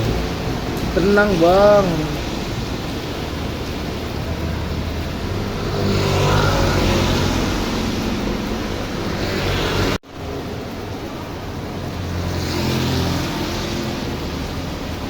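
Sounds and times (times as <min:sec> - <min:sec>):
rain: 0:00.0 - 0:15.0
road noise: 0:00.0 - 0:15.0.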